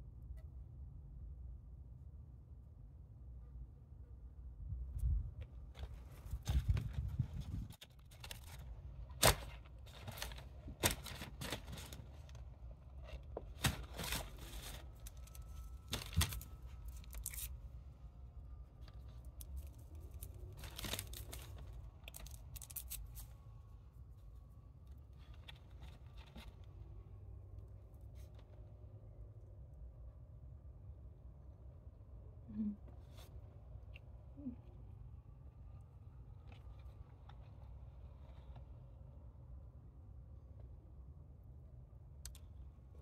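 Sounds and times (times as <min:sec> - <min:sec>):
low steady hum: 0:00.0 - 0:43.0
food packaging tearing: 0:19.4 - 0:23.2.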